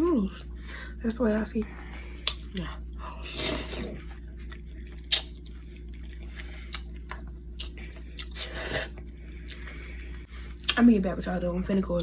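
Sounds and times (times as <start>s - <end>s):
person chewing spaghetti: 2.0s - 10.8s.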